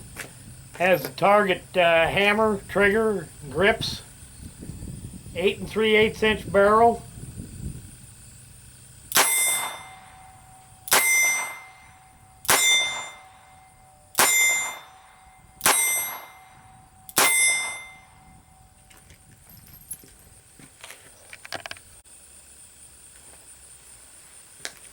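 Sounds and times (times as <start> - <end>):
revolver shots: 9.1 - 18.4
ringing tone after shots: 9.1 - 18.8.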